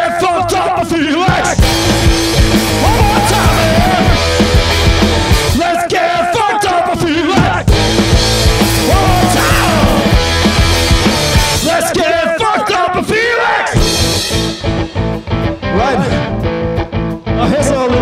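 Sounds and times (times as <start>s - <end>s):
drum hits: 1.2s - 5.6s, 7.2s - 11.8s, 13.8s - 15.2s
guitar bending notes: 1.5s - 5.6s, 7.7s - 11.6s, 13.8s - 17.4s.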